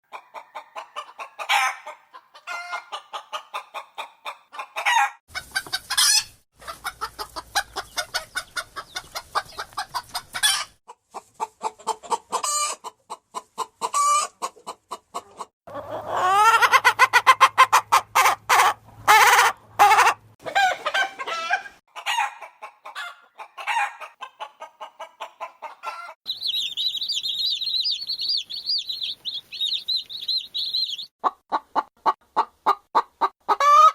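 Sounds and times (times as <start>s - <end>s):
hens clucking: 0.1s - 33.9s
hen cackling call: 25.8s - 31.1s
high continuous chirping: 26.3s - 31.1s.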